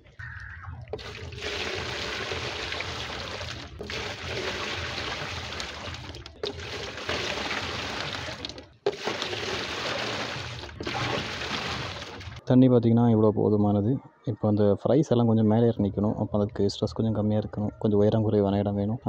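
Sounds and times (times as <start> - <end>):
water pouring and splashing: 0.8 - 12.4.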